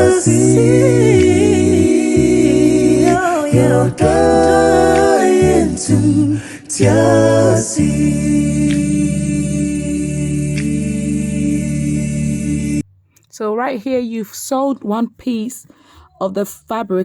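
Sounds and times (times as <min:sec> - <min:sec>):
person singing long notes: 0:00.0 - 0:07.5
sustained bass: 0:00.0 - 0:13.0.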